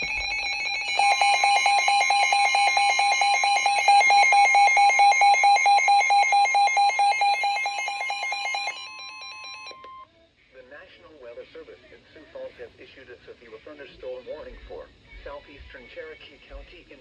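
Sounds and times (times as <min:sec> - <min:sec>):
fast electronic beeping: 0:00.0 - 0:09.7
steady warning alarm tone: 0:00.0 - 0:09.7.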